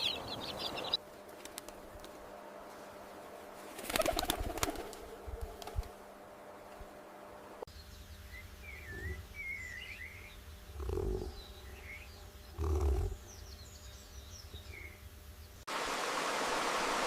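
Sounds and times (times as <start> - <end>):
small birds chirping and warbling: 0.0 - 1.0, 7.7 - 15.6
bird wings flapping: 1.3 - 2.2, 3.6 - 6.0.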